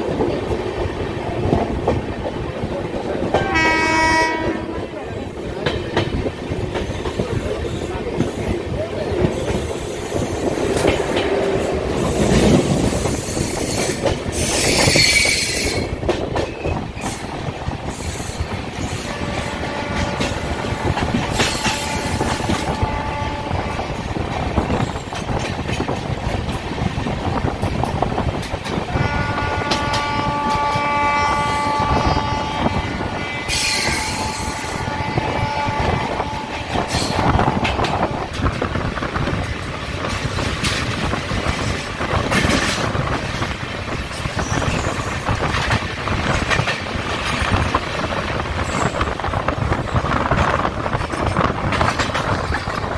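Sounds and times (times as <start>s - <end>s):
train wheels clattering on rails: 0.0s - 52.9s
train horn: 3.3s - 4.9s, 18.9s - 24.0s, 28.9s - 38.3s.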